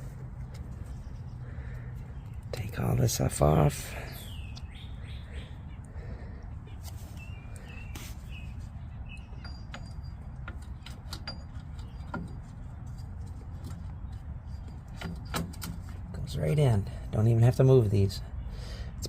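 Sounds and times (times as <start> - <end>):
brake parts clicking and tapping: 0.0 - 3.4, 6.8 - 17.2.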